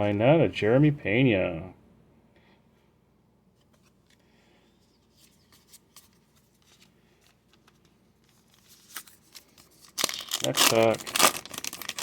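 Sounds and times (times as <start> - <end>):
trading cards rustling: 3.6 - 12.0.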